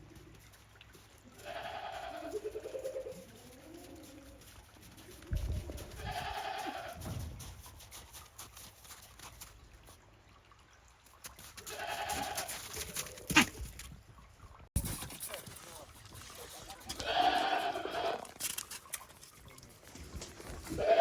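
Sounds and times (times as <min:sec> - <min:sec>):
goat bleating: 0:01.4 - 0:02.8, 0:06.0 - 0:07.1, 0:11.7 - 0:12.6, 0:16.9 - 0:18.3, 0:20.7 - 0:21.0.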